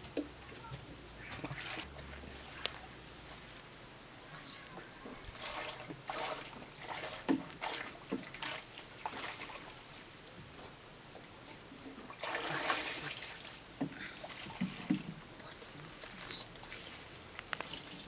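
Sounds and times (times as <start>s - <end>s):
water splashing and trickling: 1.2s - 2.9s, 5.1s - 10.3s, 11.7s - 18.0s
rush of water: 5.2s - 10.2s, 11.9s - 18.0s.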